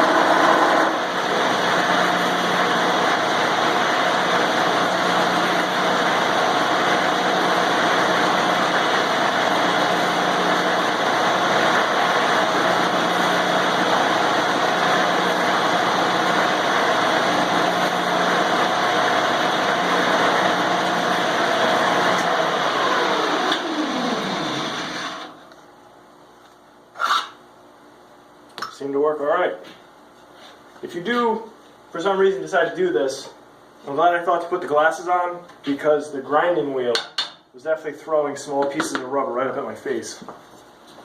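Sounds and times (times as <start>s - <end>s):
angle grinder grinding: 0.0s - 25.4s
grinder whine spinning down: 0.0s - 25.4s.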